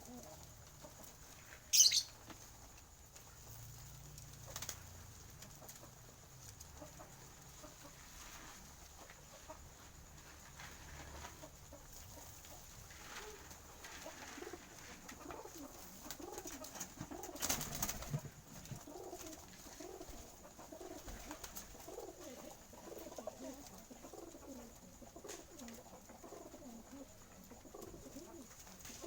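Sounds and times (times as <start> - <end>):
pigeons cooing: 13.0 - 29.0.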